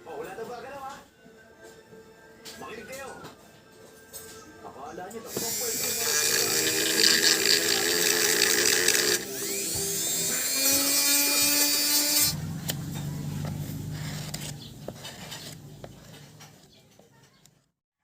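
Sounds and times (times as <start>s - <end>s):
small electric motor whirring: 5.3s - 12.4s, 13.8s - 15.6s.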